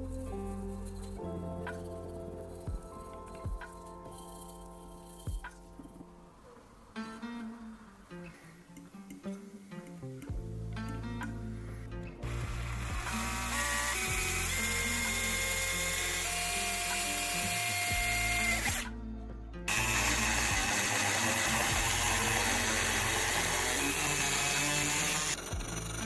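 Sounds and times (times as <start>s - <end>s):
background music: 0.0s - 26.0s
small power tool running: 12.2s - 18.9s, 19.7s - 26.0s.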